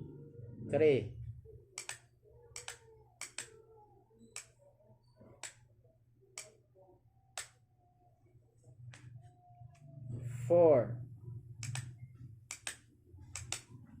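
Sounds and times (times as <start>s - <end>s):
faint switch clicks: 2.6s - 3.5s, 11.6s - 11.9s, 13.4s - 13.7s.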